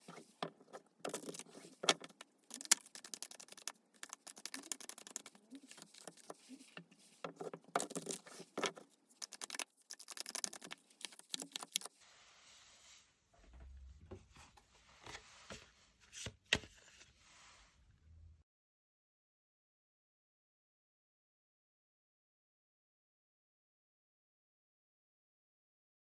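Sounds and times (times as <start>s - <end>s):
cards being shuffled: 0.0s - 11.9s.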